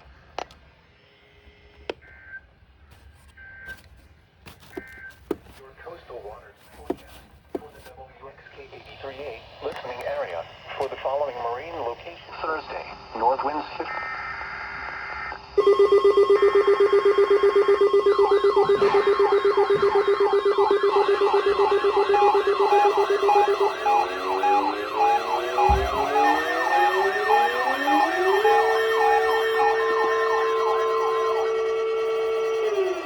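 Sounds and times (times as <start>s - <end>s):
held alarm tone: 3.2s - 5.6s, 15.6s - 33.0s
warbling siren tones: 14.1s - 33.0s
fast-pulsing alarm tone: 15.6s - 33.0s.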